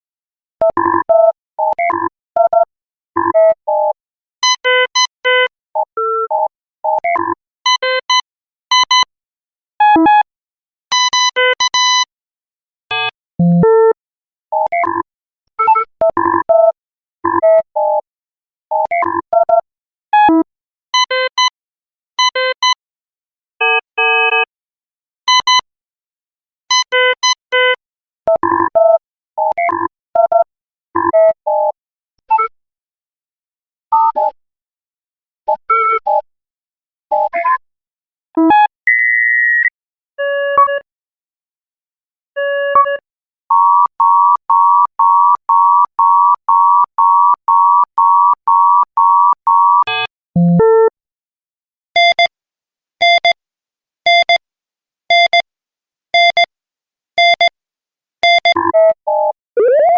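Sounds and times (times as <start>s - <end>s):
electronic console beeping: 43.5s - 50.9s.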